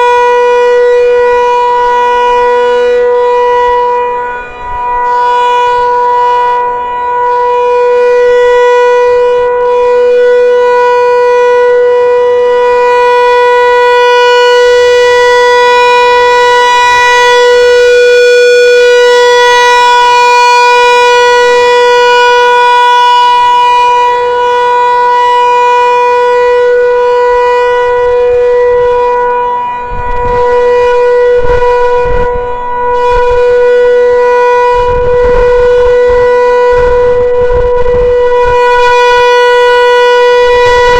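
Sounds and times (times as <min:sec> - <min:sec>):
rotating warning siren: 0:00.0 - 0:40.9
low rumbling on microphone: 0:27.8 - 0:34.0, 0:34.6 - 0:39.4.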